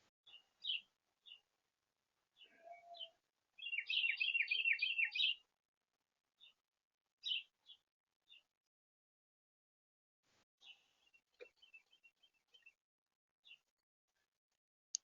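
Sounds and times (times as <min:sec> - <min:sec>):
songbird singing: 0:00.3 - 0:01.5, 0:02.4 - 0:05.4, 0:06.4 - 0:06.6, 0:07.2 - 0:08.5, 0:10.6 - 0:12.8.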